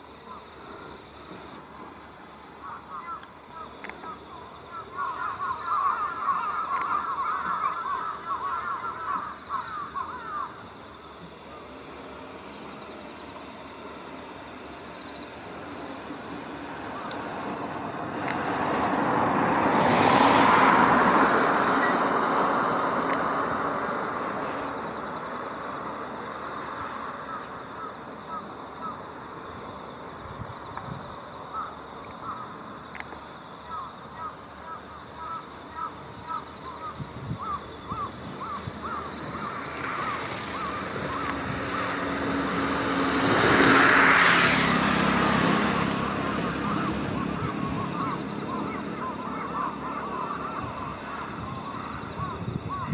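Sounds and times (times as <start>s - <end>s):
vehicle driving past: 37.9s - 51.7s.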